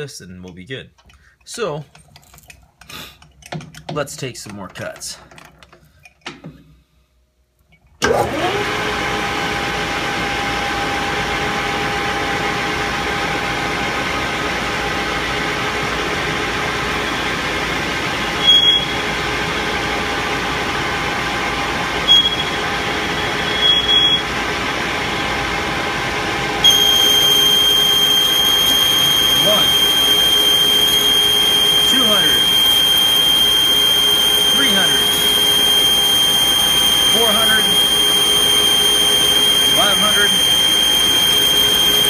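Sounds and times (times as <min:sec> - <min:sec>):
lathe motor whining: 0:08.0 - 0:42.0
cutting tool squealing: 0:18.4 - 0:19.1, 0:22.1 - 0:22.6, 0:23.2 - 0:24.3, 0:26.6 - 0:42.0.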